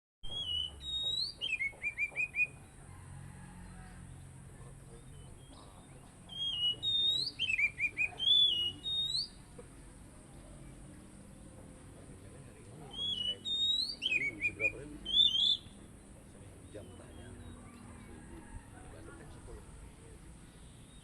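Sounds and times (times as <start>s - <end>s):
bird singing whistles: 0.2s - 2.6s, 6.3s - 9.4s, 12.9s - 15.8s.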